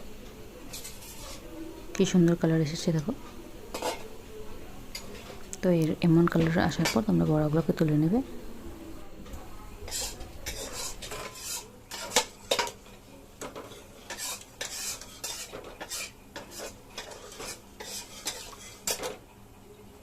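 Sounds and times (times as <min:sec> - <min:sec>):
oil sizzling: 0:00.0 - 0:08.3, 0:09.1 - 0:19.6
metal utensil scraping a frying pan: 0:00.7 - 0:01.5, 0:03.7 - 0:04.1, 0:09.8 - 0:19.2.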